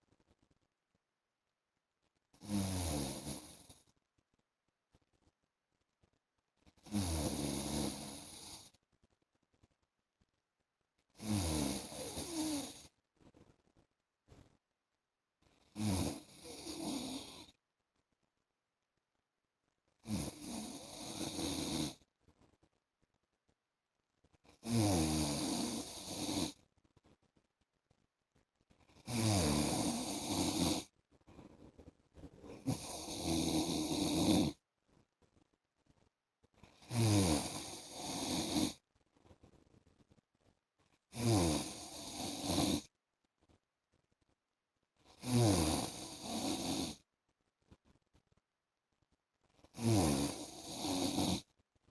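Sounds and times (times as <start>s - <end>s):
man snoring: 2.4s - 3.7s, 6.8s - 8.7s, 11.2s - 12.9s, 15.8s - 17.5s, 20.0s - 22.0s, 24.6s - 26.6s, 29.0s - 30.9s, 32.6s - 34.6s, 36.8s - 38.8s, 41.1s - 42.9s, 45.1s - 47.0s, 49.7s - 51.4s.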